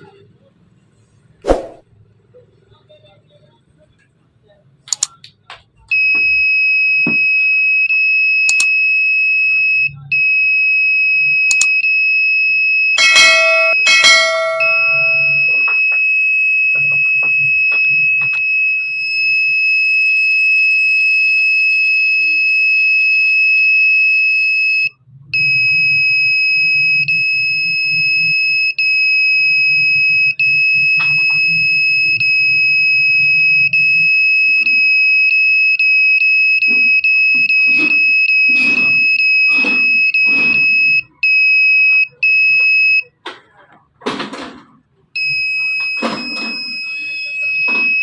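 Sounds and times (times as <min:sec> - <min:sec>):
high-pitched electronic buzzer: 0:13.0 - 0:15.6.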